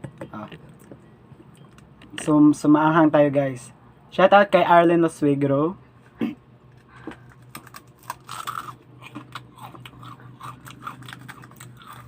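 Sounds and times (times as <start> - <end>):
faint steady hum: 0.0 - 12.0
chewing crispy crackers: 6.7 - 12.0.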